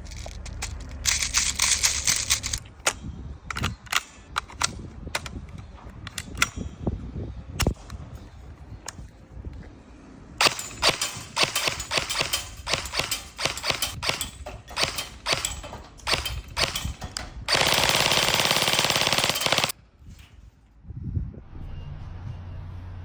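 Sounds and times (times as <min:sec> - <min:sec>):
airsoft gun full-auto burst: 0:10.4 - 0:16.9, 0:17.5 - 0:19.8.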